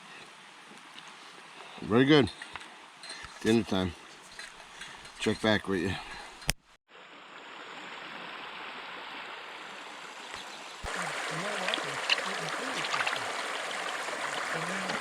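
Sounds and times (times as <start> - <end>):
mountain stream flowing: 6.9 - 15.0
faint voices: 10.9 - 13.4, 14.4 - 15.0.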